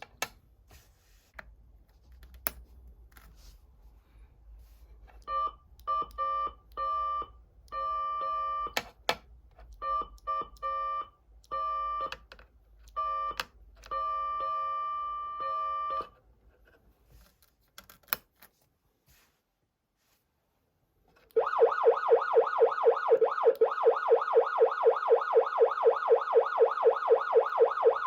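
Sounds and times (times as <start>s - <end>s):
siren electronic tone bursts: 21.4s - 28.0s.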